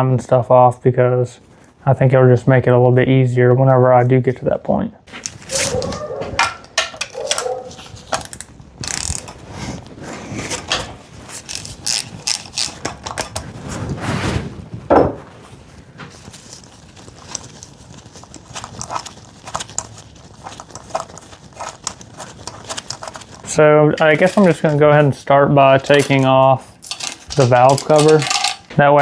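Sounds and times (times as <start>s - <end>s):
ratchet wrench clicking: 8.8s - 9.2s.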